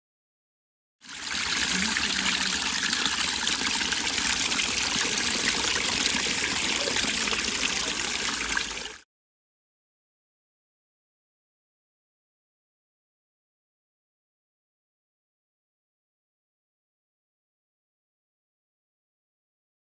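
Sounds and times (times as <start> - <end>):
waterfall splashing into pond: 1.0 - 9.0.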